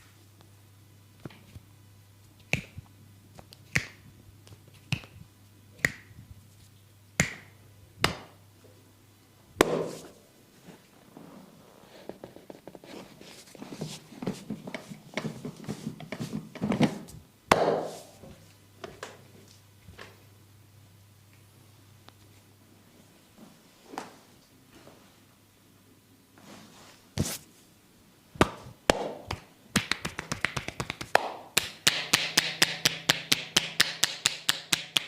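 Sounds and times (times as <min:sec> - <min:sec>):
sharp slaps on body: 0:07.2 - 0:08.4, 0:09.6 - 0:10.0, 0:17.5 - 0:18.0, 0:28.4 - 0:35.0
patting and rubbing skin: 0:29.3 - 0:32.8.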